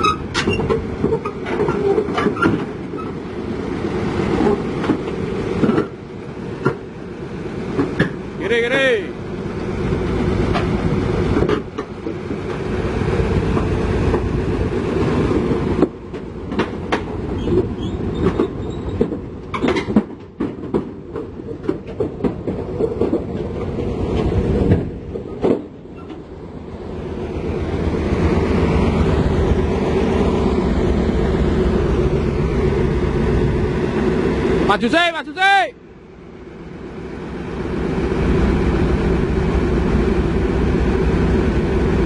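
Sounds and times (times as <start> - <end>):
sharp clanks and knocks: 0.0 - 3.2, 4.3 - 6.0, 10.5 - 12.6, 15.8 - 26.3
steel crawler tracks clanking: 0.0 - 35.6
diesel engine under load: 0.0 - 42.0.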